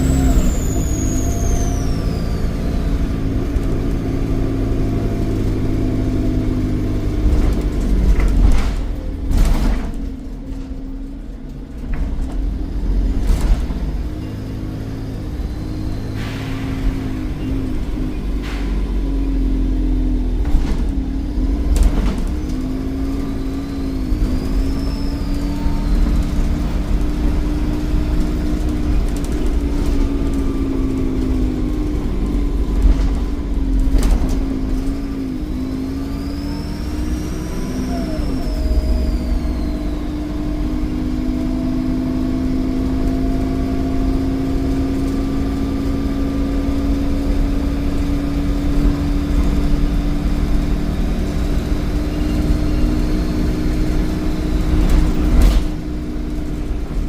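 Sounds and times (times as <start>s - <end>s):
turbocharger whistle: 0.0s - 3.7s, 15.1s - 19.5s, 22.8s - 31.8s, 34.8s - 41.9s, 51.4s - 55.4s
bus diesel engine running: 0.0s - 57.0s.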